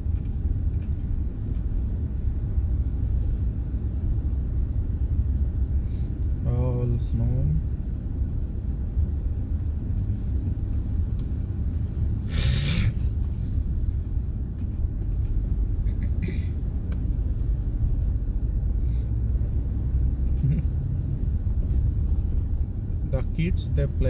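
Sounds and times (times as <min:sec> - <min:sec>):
city road traffic rumble: 0:00.0 - 0:24.0
short hissing rush: 0:12.2 - 0:13.6.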